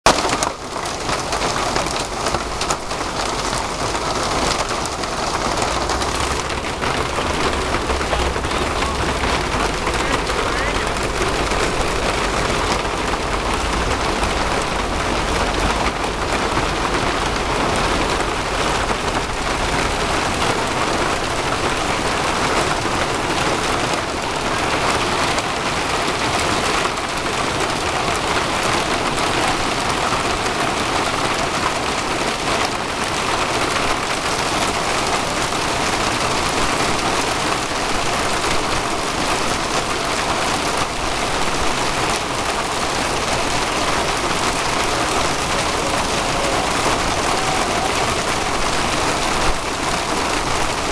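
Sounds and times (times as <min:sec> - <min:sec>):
hail and heavy rain pelting: 0:00.0 - 0:50.9
low rumble: 0:01.9 - 0:20.0.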